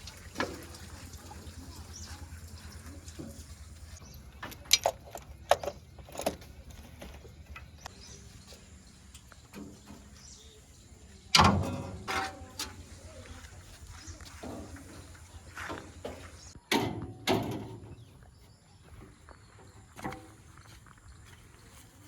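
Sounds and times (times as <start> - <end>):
diesel engine running: 0.1 - 16.6.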